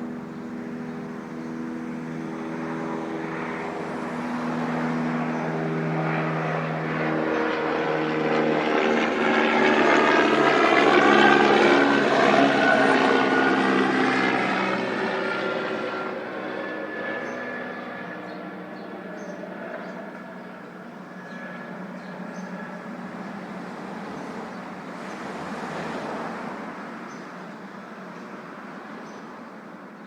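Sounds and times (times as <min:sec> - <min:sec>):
propeller airplane flying past: 0:00.0 - 0:30.0.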